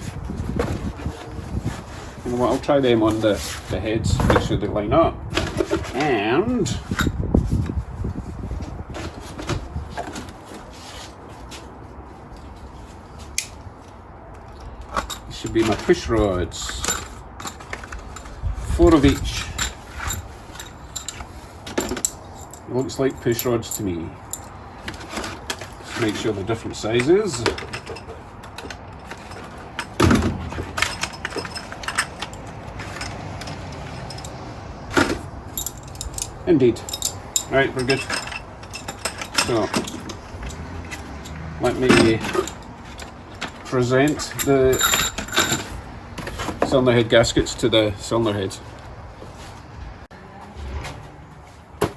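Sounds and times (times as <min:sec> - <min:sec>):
cardboard rustling and scraping: 0:00.0 - 0:04.6, 0:05.3 - 0:13.4
metal rods clinking together: 0:14.4 - 0:46.8.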